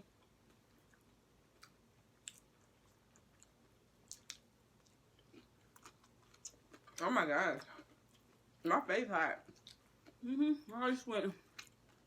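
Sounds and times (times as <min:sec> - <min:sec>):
person chewing: 0:00.1 - 0:07.0, 0:09.5 - 0:10.3.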